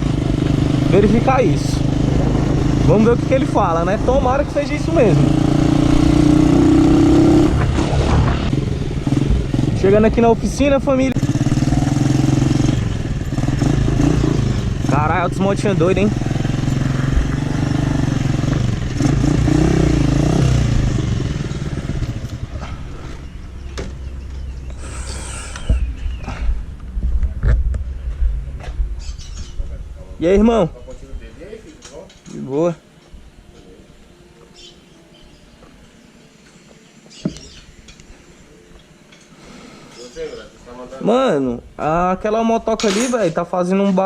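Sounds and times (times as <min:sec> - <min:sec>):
motorcycle engine running: 0:00.0 - 0:29.5.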